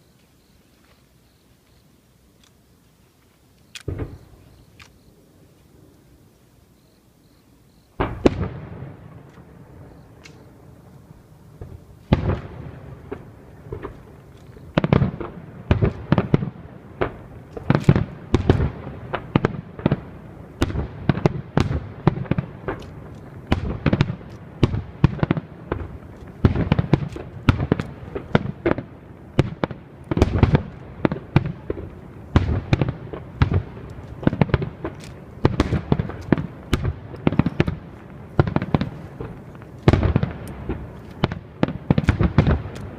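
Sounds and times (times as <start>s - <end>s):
fireworks bursting with bangs: 3.8s - 4.8s, 7.9s - 42.9s.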